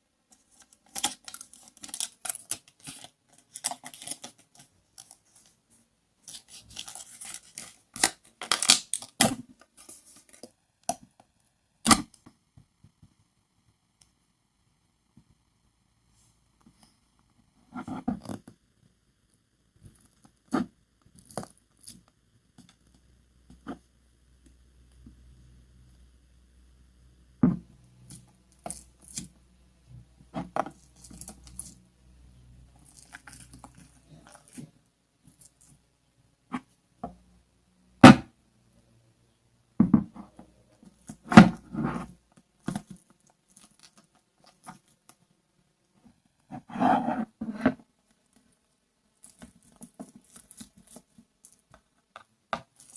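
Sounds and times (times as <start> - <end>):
packaging crinkling: 0.6 - 5.2, 6.3 - 9.3.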